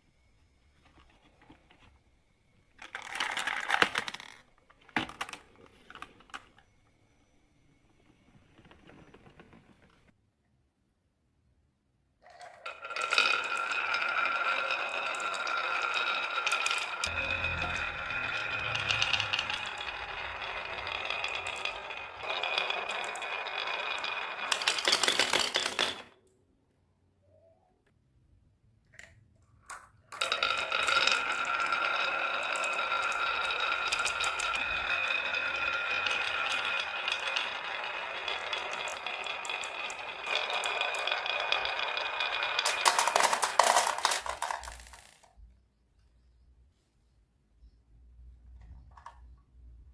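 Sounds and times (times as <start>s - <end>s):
marbles rolling down wooden run: 12.4s - 26.1s, 30.2s - 45.3s
steady ringing tone: 12.9s - 24.2s.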